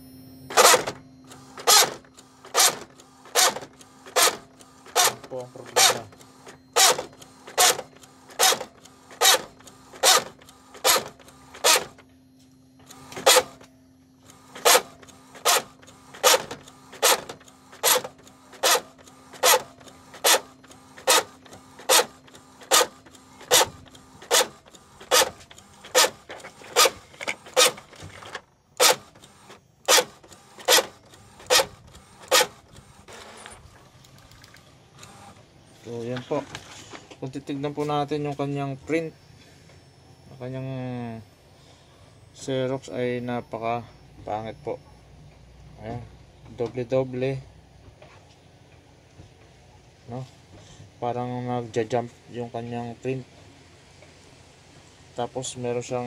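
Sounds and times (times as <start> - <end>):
printer humming: 0.0 - 56.0
printer knocking: 0.5 - 12.0, 12.9 - 13.7, 14.4 - 32.7.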